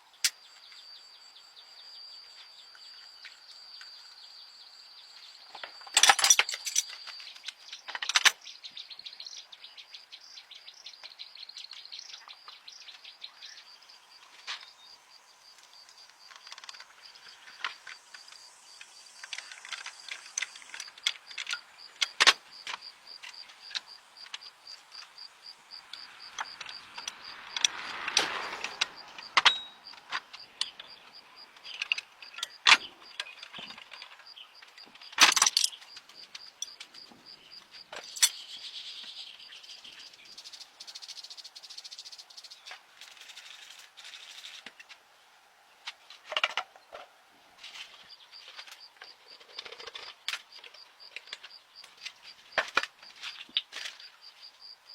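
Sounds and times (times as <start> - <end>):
insects chirping: 0.0 - 54.9
hand tools clicking and knocking: 5.6 - 8.4, 31.6 - 37.0.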